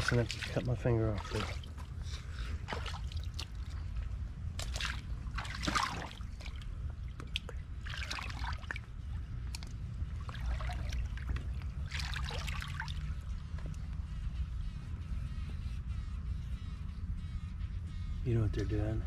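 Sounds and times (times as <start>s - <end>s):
creek water splashing: 0.0s - 1.9s, 2.6s - 3.8s, 4.6s - 13.2s
steady low rumble: 0.0s - 19.0s.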